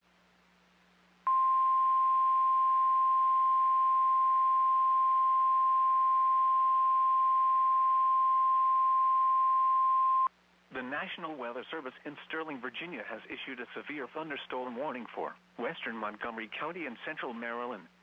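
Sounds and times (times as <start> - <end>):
faint receiver hiss: 10.2 - 18.0.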